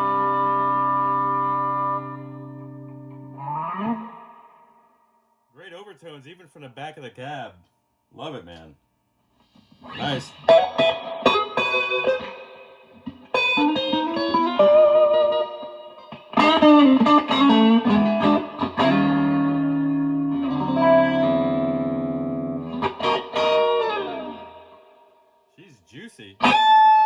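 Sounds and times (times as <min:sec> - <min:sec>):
electric guitar playing: 0:00.0 - 0:04.8, 0:09.8 - 0:24.9, 0:26.4 - 0:27.0.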